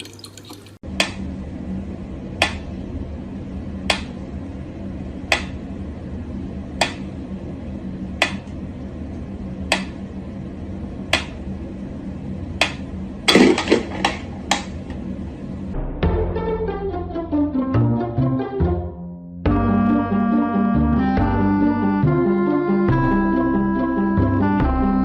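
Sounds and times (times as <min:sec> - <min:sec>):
water dripping: 0:00.0 - 0:00.8
low hum: 0:00.8 - 0:17.3
music: 0:15.8 - 0:25.0.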